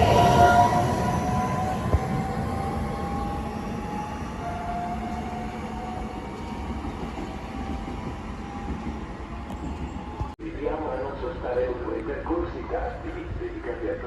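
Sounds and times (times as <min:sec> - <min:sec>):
high squealing of train wheels: 0:00.0 - 0:10.4
train rumbling: 0:00.0 - 0:14.0.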